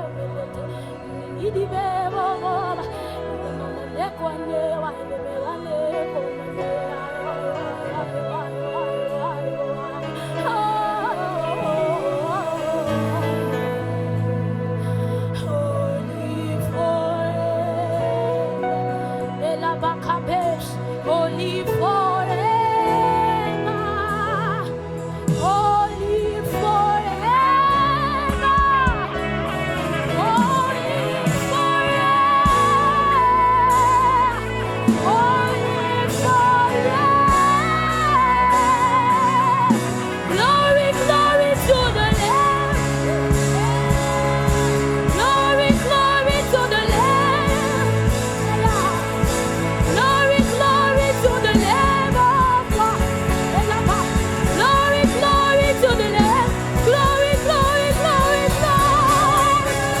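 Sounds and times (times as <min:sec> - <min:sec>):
person singing with vibrato: 0:00.0 - 1:00.0
steady drum beat: 0:39.7 - 1:00.0.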